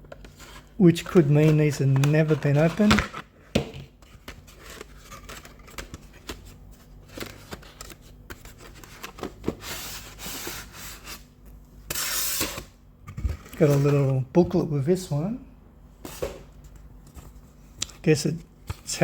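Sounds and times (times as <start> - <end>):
paper and card rustling: 0.0 - 14.2.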